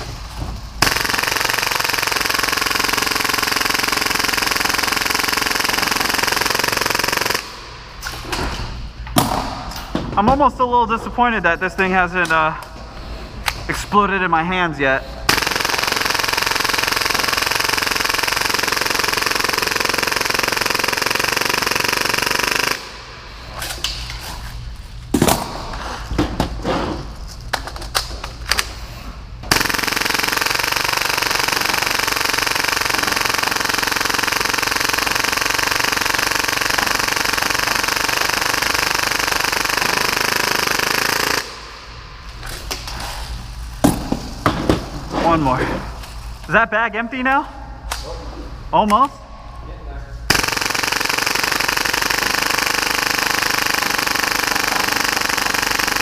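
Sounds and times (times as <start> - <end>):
airsoft pistol rapid firing: 0.8 - 7.7, 15.3 - 23.1, 29.5 - 41.7, 50.3 - 56.0.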